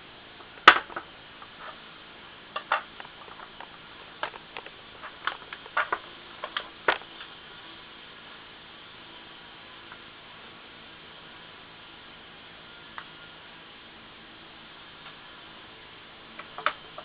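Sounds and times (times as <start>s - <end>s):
small parts and tools clicking: 2.6s - 7.3s.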